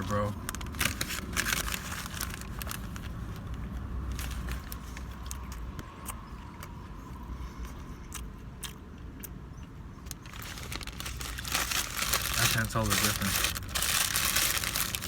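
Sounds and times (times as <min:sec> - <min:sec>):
person chewing: 0:04.6 - 0:11.4.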